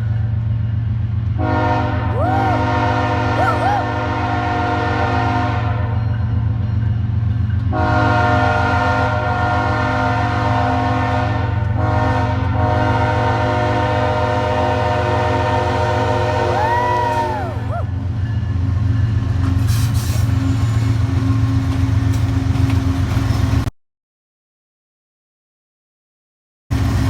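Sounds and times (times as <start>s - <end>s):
locomotive air horn blasts: 1.4s - 6.0s, 7.7s - 17.7s.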